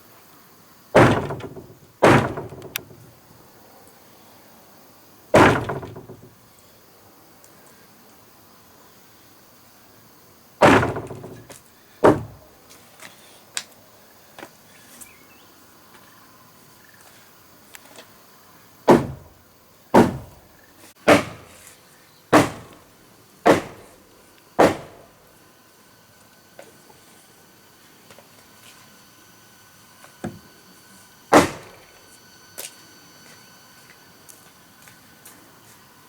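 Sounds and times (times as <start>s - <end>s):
heavy blows on wood: 1.0s - 3.1s, 5.4s - 6.3s, 10.6s - 12.5s, 18.9s - 19.4s, 20.0s - 21.6s, 22.3s - 22.8s, 23.5s - 24.0s, 24.6s - 25.1s, 31.3s - 31.8s.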